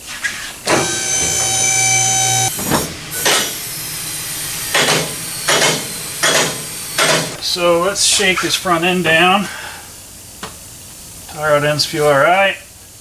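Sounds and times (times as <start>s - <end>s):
hydraulic pump motor running: 0.0s - 10.1s
hissing clunking bursts: 0.0s - 13.0s
low hum: 0.7s - 9.0s.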